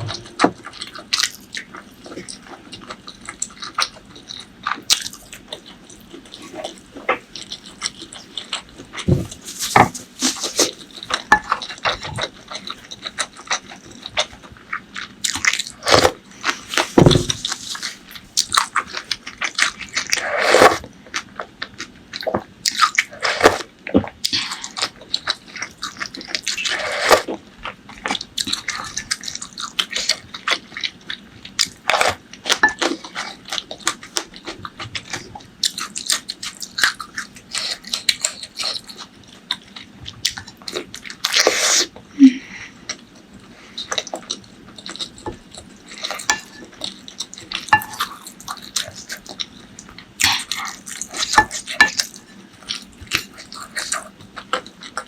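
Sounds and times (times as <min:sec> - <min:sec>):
wet chewing: 0:42.8 - 0:55.0.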